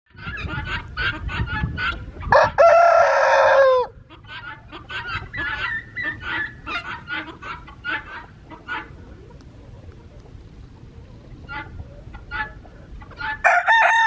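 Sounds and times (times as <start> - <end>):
hens clucking: 0.1 - 14.0
rooster crowing: 2.3 - 4.0, 13.3 - 14.0.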